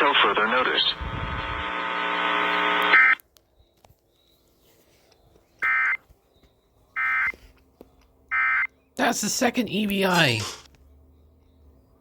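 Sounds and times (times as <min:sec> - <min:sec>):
steady radio buzz: 0:00.0 - 0:03.2.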